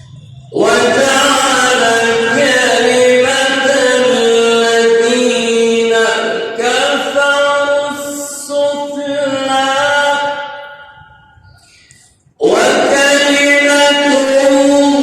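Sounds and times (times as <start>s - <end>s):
man chanting melodically: 0.1s - 15.0s
man breathing: 11.4s - 12.3s.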